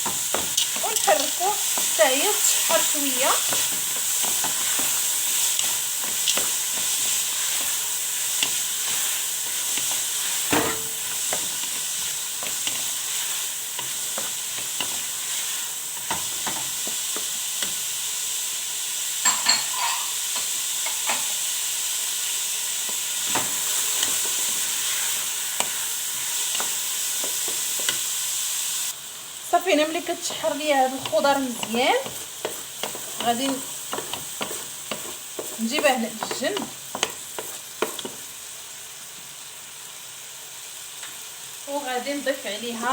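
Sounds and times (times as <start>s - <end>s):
spoon scraping a pan: 0.0s - 17.8s, 19.2s - 21.4s, 30.0s - 38.2s
vegetables sizzling in a pan: 0.0s - 42.9s.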